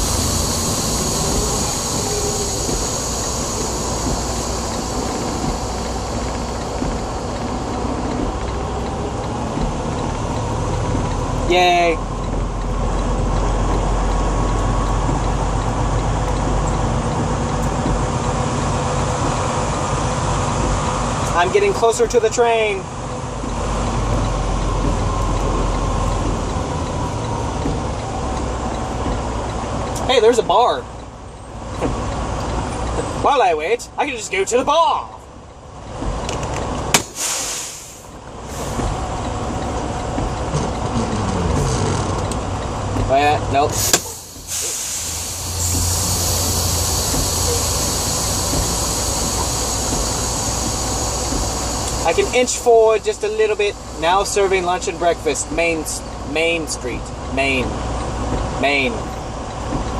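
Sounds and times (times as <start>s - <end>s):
low tone sliding downward: 0.0s - 11.5s, 38.4s - 43.1s, 44.1s - 54.7s
vehicle engine humming: 0.0s - 59.9s
short hiss: 37.0s - 38.9s, 43.7s - 52.5s.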